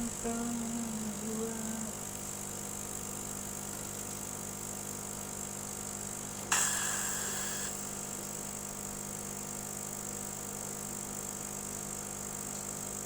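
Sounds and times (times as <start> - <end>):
machine hum of fans and pumps: 0.0 - 13.0
sharp hissing ringing sound: 6.5 - 8.1.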